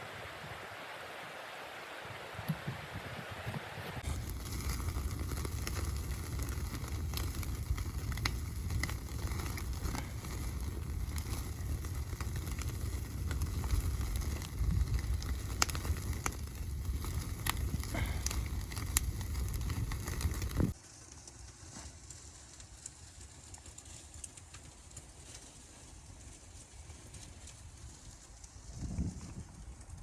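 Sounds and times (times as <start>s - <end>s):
wood fire crackling: 0.0s - 30.0s
fire pops and snaps: 2.4s - 30.0s.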